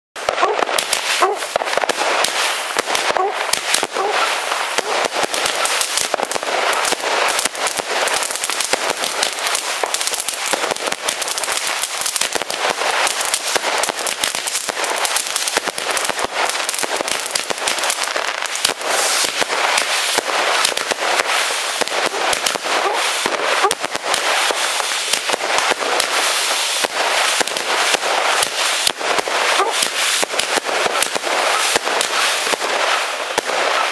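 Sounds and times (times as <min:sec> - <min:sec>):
fireworks crackling: 0:00.2 - 0:33.9.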